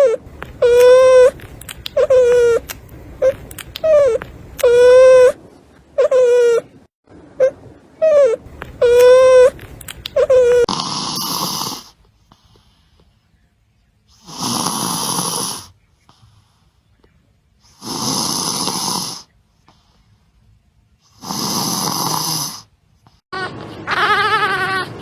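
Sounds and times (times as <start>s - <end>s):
newborn puppy crying: 0.0s - 5.4s, 6.0s - 6.7s, 7.4s - 11.8s, 23.4s - 25.0s
rasping snore-like breaths: 10.3s - 12.9s, 14.2s - 16.8s, 17.7s - 19.3s, 21.1s - 22.7s.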